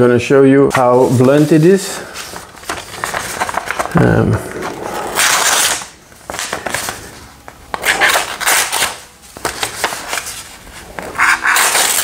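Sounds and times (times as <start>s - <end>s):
knife blade tearing through material: 11.2s - 12.0s.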